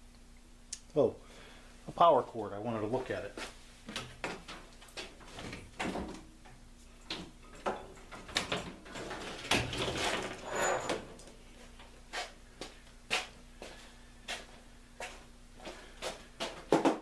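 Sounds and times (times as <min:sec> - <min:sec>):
rustling and scraping: 0:06.8 - 0:12.4.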